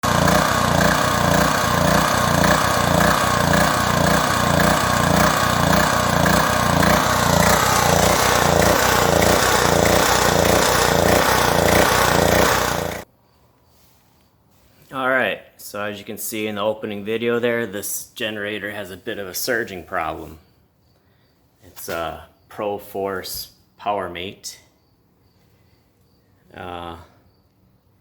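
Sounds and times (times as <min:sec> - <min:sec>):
generator engine surging: 0:00.0 - 0:13.0.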